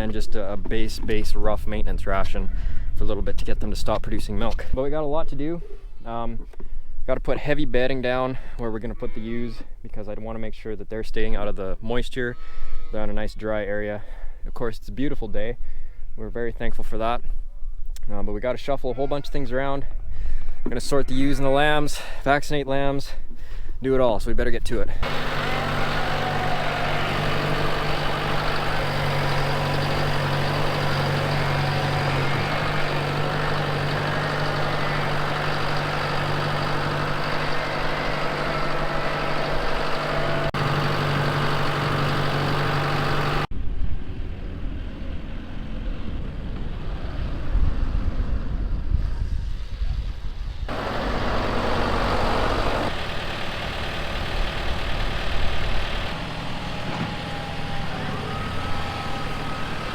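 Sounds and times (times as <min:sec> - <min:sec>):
farm machine engine running: 0:25.0 - 0:43.5, 0:50.7 - 0:59.9.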